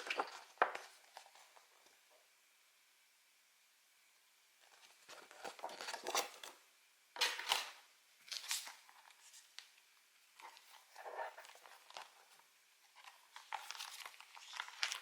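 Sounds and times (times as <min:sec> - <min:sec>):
packaging tearing and crinkling: 0:13.4 - 0:15.0.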